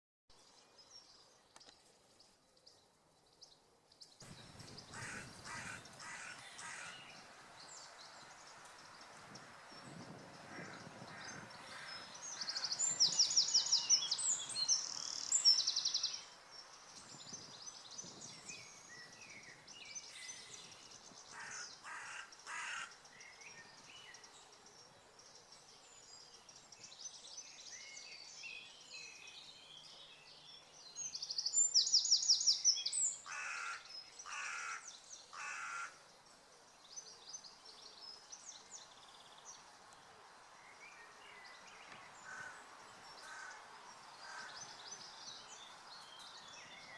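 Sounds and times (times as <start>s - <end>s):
background hiss: 0.4s - 46.9s
birds singing: 0.4s - 46.9s
harsh bird calls: 4.3s - 8.6s, 19.4s - 23.4s, 31.8s - 36.0s.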